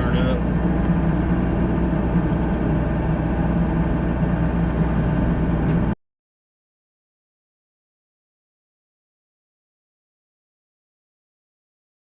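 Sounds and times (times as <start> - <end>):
excavator diesel engine running: 0.0 - 6.0.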